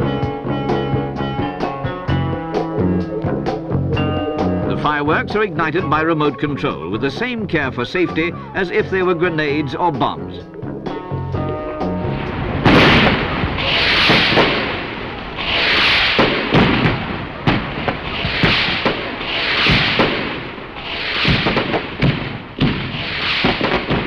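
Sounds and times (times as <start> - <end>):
firework bangs and cracks: 12.0 - 24.0
firework whooshes: 12.0 - 24.0.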